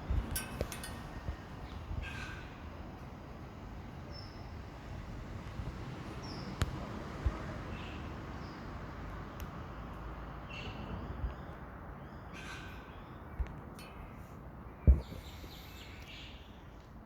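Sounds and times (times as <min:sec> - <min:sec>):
birds calling faintly: 0:09.6 - 0:16.9.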